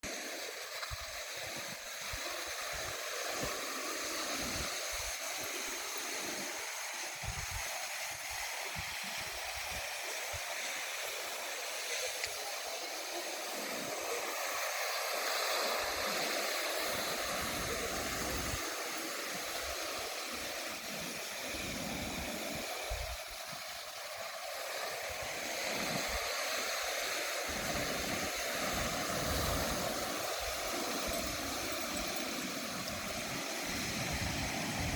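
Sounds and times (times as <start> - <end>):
ocean surf hissing: 0.0 - 34.9.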